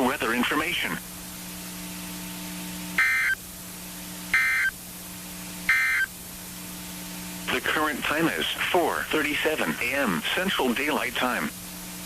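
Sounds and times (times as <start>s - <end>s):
low radio hum: 0.0s - 12.0s
harsh digital chirps: 3.0s - 3.4s, 4.3s - 4.7s, 5.7s - 6.1s.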